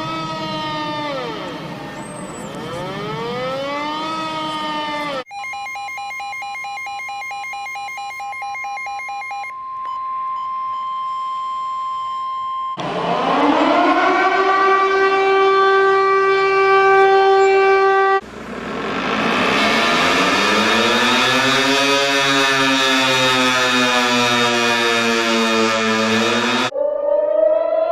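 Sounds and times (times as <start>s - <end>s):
civil defense siren: 0.0s - 5.3s, 12.7s - 27.9s
steady alarm tone: 0.0s - 27.9s.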